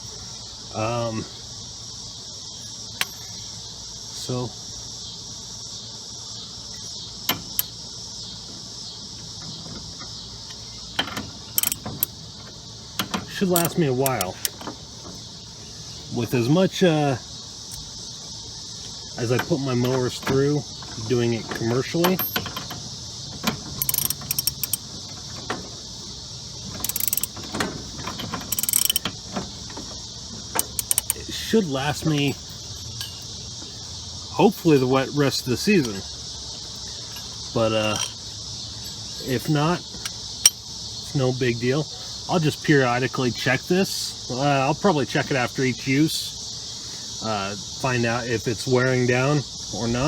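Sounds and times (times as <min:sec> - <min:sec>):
high insect chirring: 0:00.0 - 0:50.0
high-pitched hiss: 0:00.0 - 0:50.0
socket ratchet clicking: 0:11.0 - 0:12.2, 0:23.5 - 0:24.8, 0:26.8 - 0:29.2, 0:30.6 - 0:31.3.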